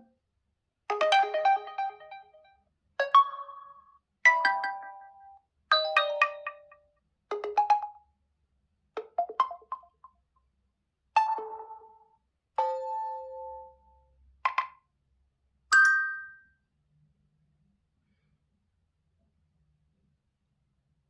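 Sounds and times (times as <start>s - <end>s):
smartphone chime melodies: 15.7s - 16.5s.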